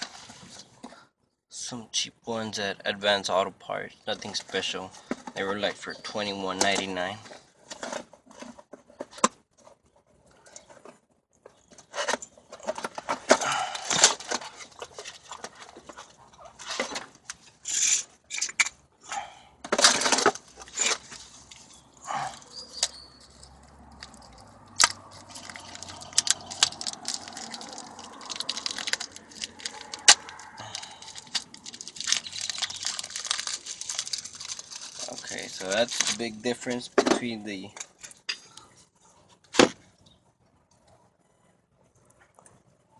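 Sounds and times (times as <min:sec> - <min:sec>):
packaging tearing and crinkling: 0:24.0 - 0:36.4.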